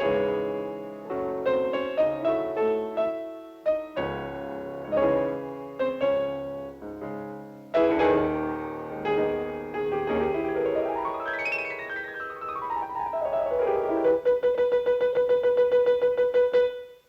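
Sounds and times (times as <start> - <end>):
piano music: 0.0 - 17.0.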